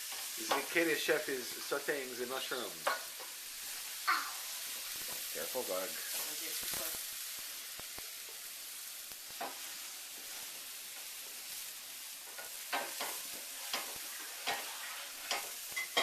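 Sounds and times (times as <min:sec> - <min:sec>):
mushrooms sizzling in a frying pan: 0:00.0 - 0:16.0
utensil scraping a pan: 0:12.4 - 0:16.0.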